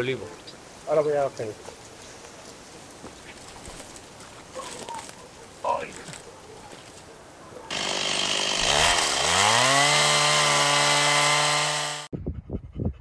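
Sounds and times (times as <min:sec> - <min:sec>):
chainsaw cutting wood: 0:07.7 - 0:12.1.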